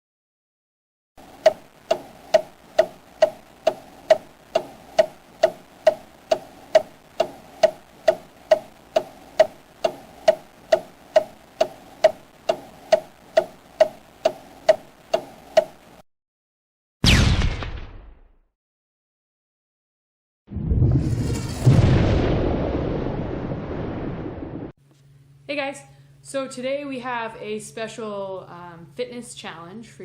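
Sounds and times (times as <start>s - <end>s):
clock ticking: 1.2s - 16.0s.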